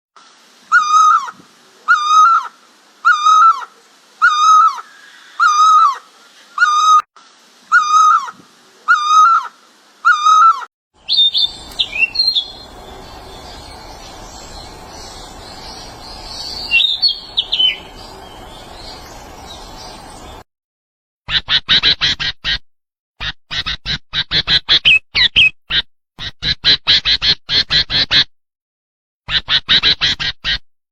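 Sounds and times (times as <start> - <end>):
steady background hiss: 0.2 - 6.6, 7.2 - 10.1, 11.0 - 20.4
bird short clear call: 11.0 - 20.4.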